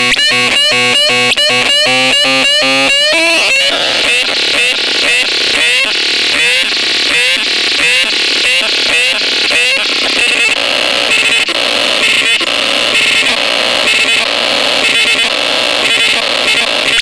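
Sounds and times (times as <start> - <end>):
synthesizer electronic pattern: 0.0 - 11.4.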